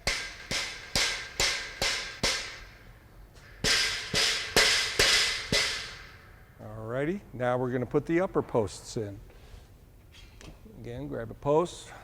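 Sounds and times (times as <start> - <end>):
rubber mallet striking steel: 0.0 - 2.8, 3.6 - 6.2.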